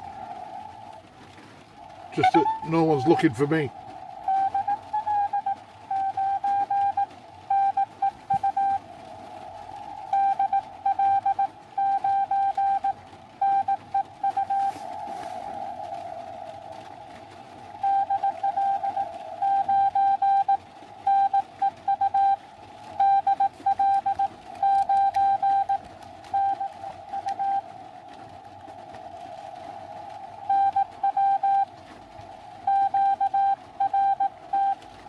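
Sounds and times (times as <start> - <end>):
radio band hiss: 0.0 - 35.0
morse code beeping tone: 4.3 - 8.8, 10.1 - 14.7, 17.8 - 22.4, 23.0 - 27.6, 30.5 - 31.7, 32.6 - 34.8.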